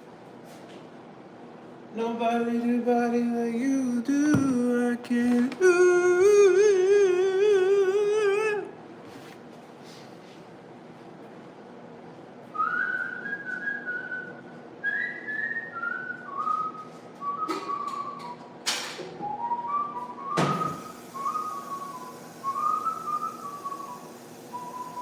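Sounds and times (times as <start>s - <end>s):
knocks: 4.3s - 4.6s
person whistling a tune: 12.5s - 18.6s, 19.2s - 25.0s.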